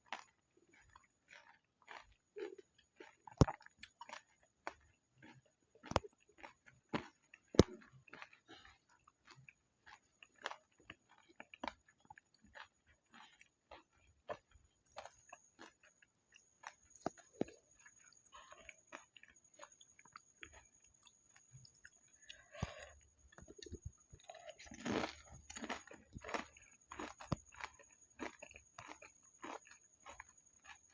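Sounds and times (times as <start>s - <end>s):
wet mouth sounds: 3.3s - 4.2s, 21.8s - 26.3s.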